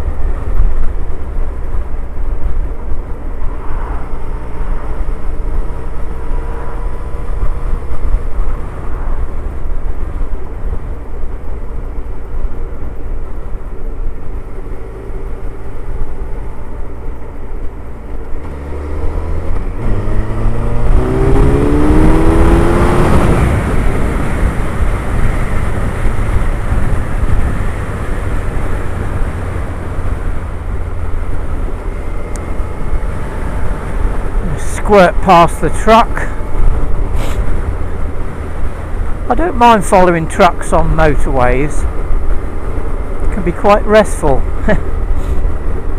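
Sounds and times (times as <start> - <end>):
wind and road noise: 0.0 - 45.9
motorcycle engine cruising: 18.0 - 39.8.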